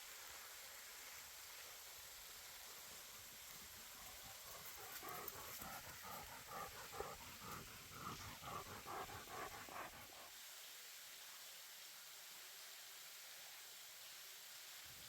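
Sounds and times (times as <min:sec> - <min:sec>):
dog panting: 0:03.6 - 0:10.3.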